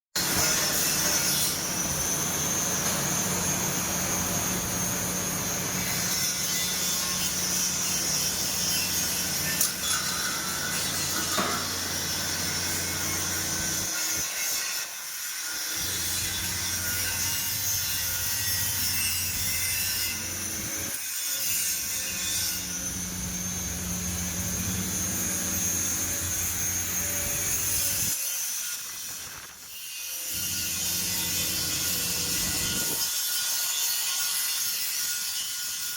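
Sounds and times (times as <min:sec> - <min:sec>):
electric arc welding crackling: 0:00.3 - 0:33.1
electrical hum: 0:22.1 - 0:28.1.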